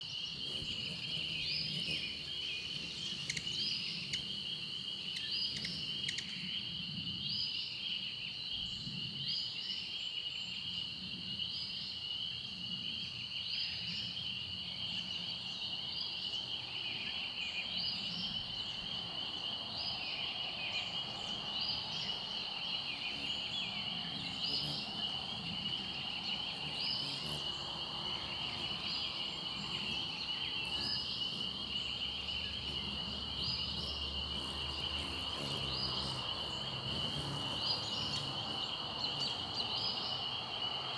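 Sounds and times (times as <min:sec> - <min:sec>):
shrill insect chorus: 0:00.1 - 0:07.0, 0:15.7 - 0:40.9.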